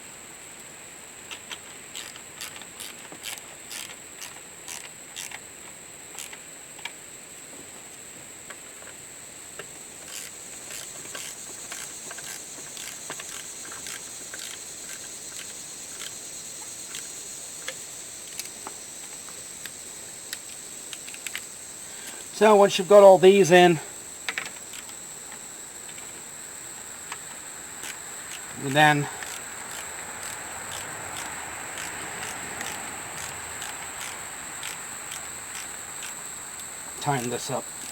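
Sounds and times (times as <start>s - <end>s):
steady high-pitched hiss: 0.0s - 37.9s
socket wrench clicking: 10.1s - 16.2s, 29.2s - 36.7s.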